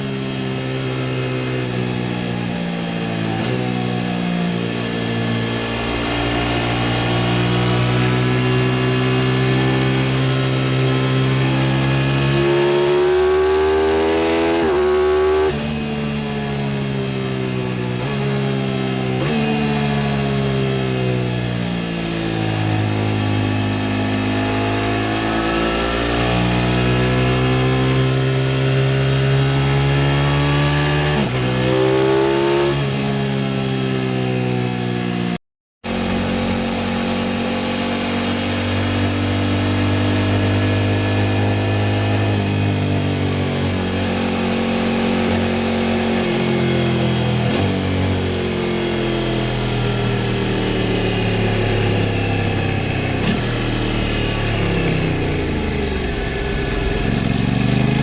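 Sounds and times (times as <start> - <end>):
motorcycle engine under way: 0.0 - 58.0.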